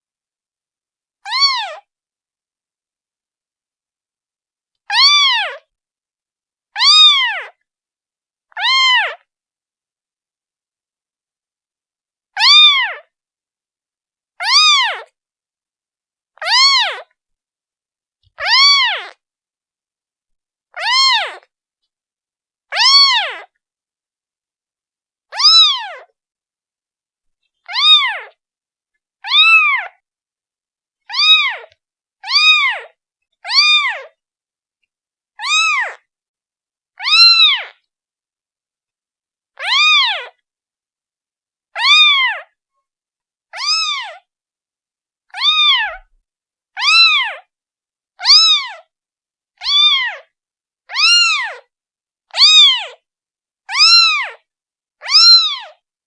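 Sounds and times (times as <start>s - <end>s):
kitten meowing: 1.3s - 1.9s, 4.9s - 5.6s, 6.8s - 7.6s, 8.6s - 9.2s, 12.4s - 13.0s, 14.4s - 15.1s, 16.4s - 17.0s, 18.4s - 19.2s, 20.8s - 21.5s, 22.7s - 23.5s, 25.3s - 26.1s, 27.6s - 28.4s, 29.2s - 30.0s, 31.1s - 34.1s, 35.4s - 36.0s, 37.0s - 37.7s, 39.6s - 40.4s, 41.8s - 42.5s, 43.6s - 44.2s, 45.4s - 46.1s, 46.8s - 47.5s, 48.2s - 48.9s, 49.6s - 50.3s, 50.9s - 51.7s, 52.4s - 53.0s, 53.7s - 54.4s, 55.0s - 55.8s.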